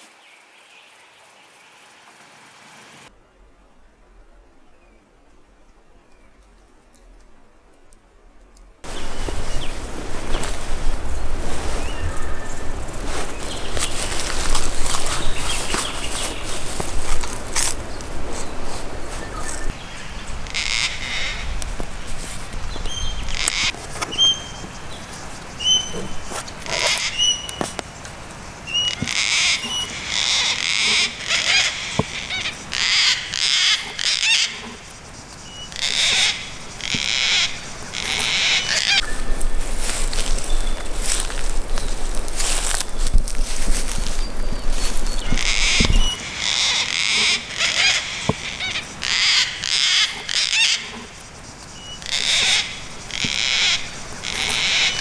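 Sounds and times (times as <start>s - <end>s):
harsh bird calls: 8.8s - 55.0s
bird whistled chirp: 24.1s - 24.6s, 25.6s - 26.2s.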